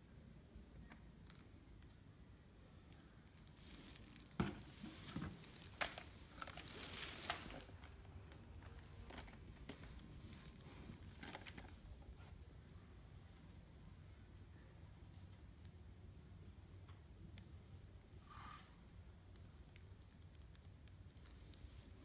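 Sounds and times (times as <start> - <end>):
crinkling rustles: 3.2 - 12.3.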